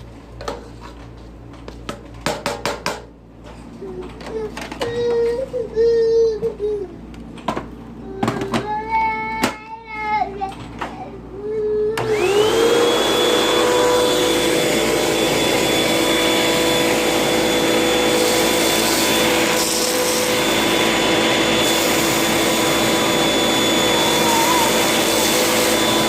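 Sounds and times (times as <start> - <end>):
vacuum cleaner running: 11.9 - 26.0.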